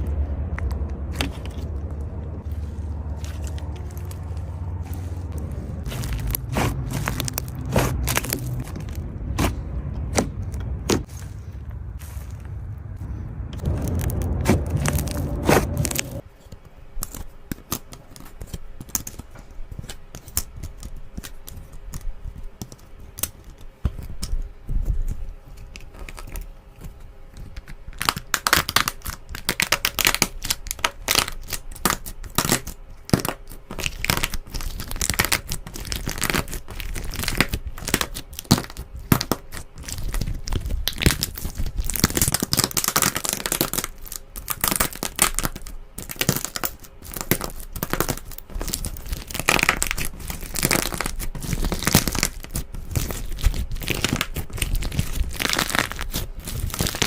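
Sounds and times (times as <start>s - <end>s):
loud deep sound: 0.0s - 16.2s
slime crackling and popping: 5.8s - 11.0s, 16.9s - 24.3s, 24.9s - 57.0s.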